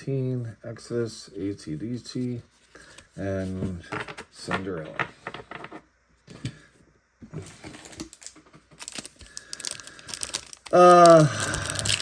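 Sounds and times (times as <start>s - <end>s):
wax paper crinkling: 7.4s - 12.0s.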